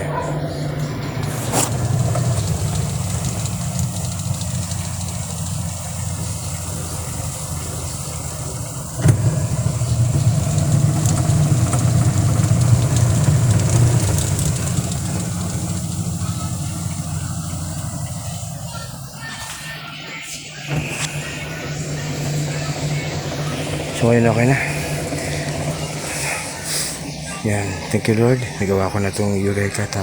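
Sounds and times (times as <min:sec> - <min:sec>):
washing machine spin cycle hum: 0:00.0 - 0:30.0
machine knock: 0:00.4 - 0:18.7.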